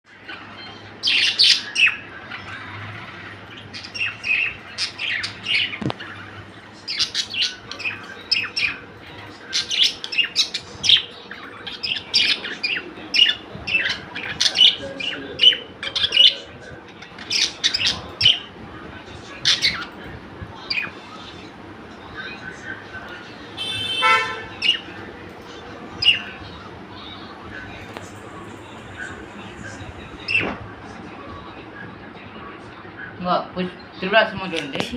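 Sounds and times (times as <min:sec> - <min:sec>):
small birds chirping: 0:00.1 - 0:34.9.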